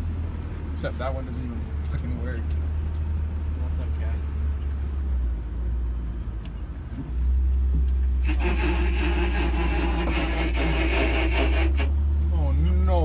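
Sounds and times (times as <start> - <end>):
car driving drone: 0.0 - 13.0
tire rubbing against car body: 8.2 - 12.0.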